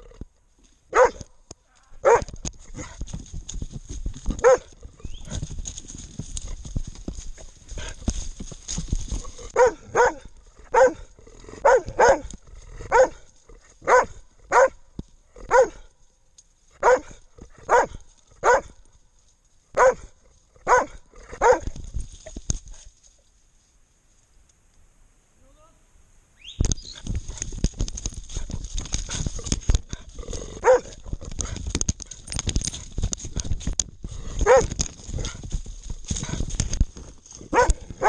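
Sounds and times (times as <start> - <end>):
rustling and movement noise: 0.0 - 25.4, 26.5 - 38.0
dog barking loudly: 0.9 - 1.3, 2.0 - 2.3, 4.4 - 4.7, 9.5 - 12.3, 12.9 - 13.2, 13.8 - 14.8, 15.5 - 15.8, 16.8 - 18.7, 19.8 - 21.7, 30.6 - 31.0, 34.4 - 34.7, 37.5 - 37.9.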